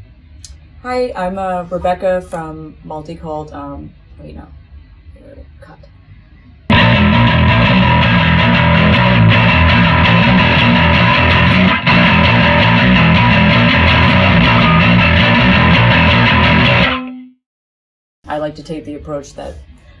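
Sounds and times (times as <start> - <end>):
distorted heavy rock music: 6.7 - 17.1
heavy bass: 6.7 - 17.3
electric guitar: 6.7 - 17.4.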